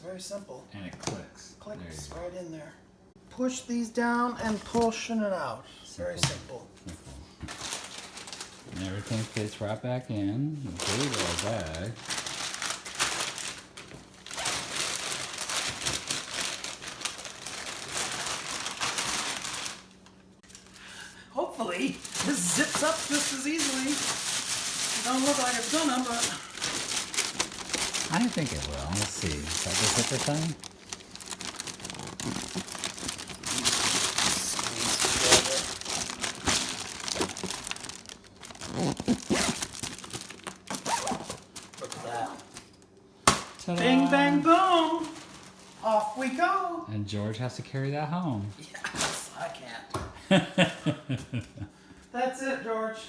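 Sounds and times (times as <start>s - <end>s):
gear crinkling and rustling in bag: 7.5s - 20.8s, 21.8s - 42.9s, 43.8s - 46.1s
bag zipping: 27.5s - 30.6s, 31.3s - 40.1s, 40.7s - 41.4s.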